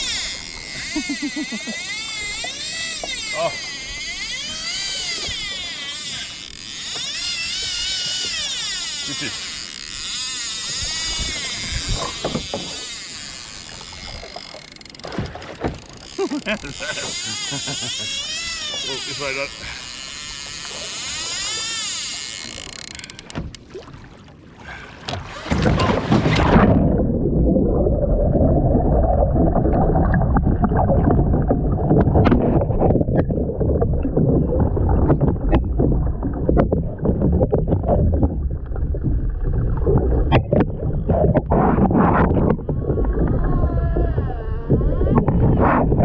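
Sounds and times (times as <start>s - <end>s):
water rushing and splashing: 20.6s - 46.0s.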